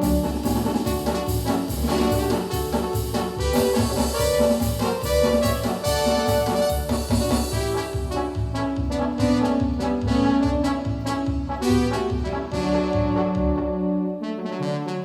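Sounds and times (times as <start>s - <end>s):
brass-like synthesizer: 0.0s - 15.0s.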